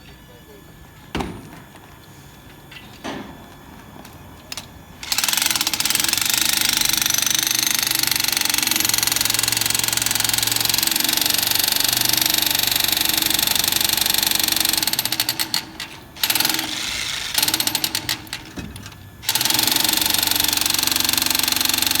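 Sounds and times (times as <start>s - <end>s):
jackhammer breaking concrete: 5.0s - 22.0s.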